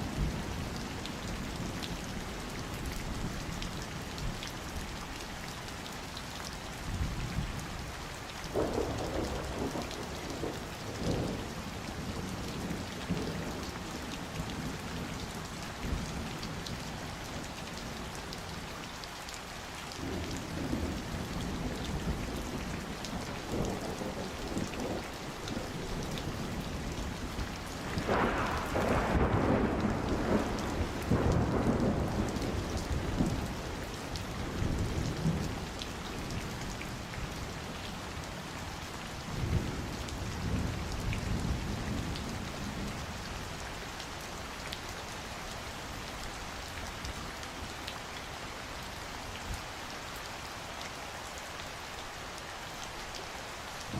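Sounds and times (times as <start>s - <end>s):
steady rain falling: 0.0s - 53.9s
thunder rumbling: 20.0s - 33.8s.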